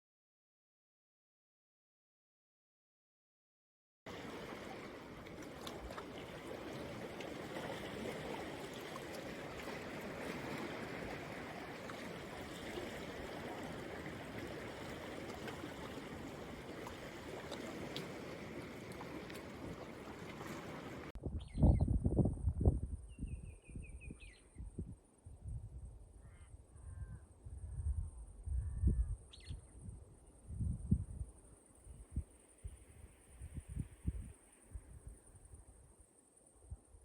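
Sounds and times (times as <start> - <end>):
stream water flowing: 4.1 - 21.2.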